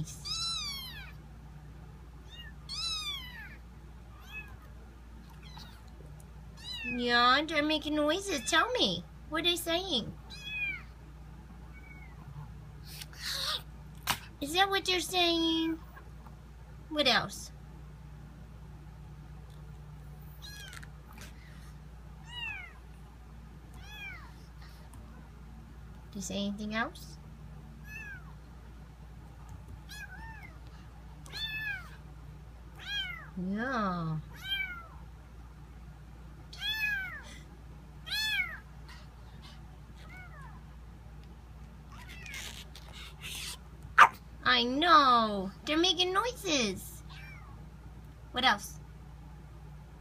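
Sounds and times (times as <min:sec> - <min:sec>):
kittens mewing: 0:00.0 - 0:01.2, 0:02.2 - 0:04.7, 0:05.3 - 0:05.9, 0:10.3 - 0:10.9, 0:11.7 - 0:14.2, 0:20.4 - 0:21.5, 0:22.2 - 0:22.9, 0:23.7 - 0:24.5, 0:27.8 - 0:28.4, 0:31.2 - 0:32.0, 0:32.8 - 0:33.3, 0:34.3 - 0:35.0, 0:36.5 - 0:37.4, 0:38.0 - 0:40.6, 0:41.9 - 0:44.2, 0:47.1 - 0:47.6.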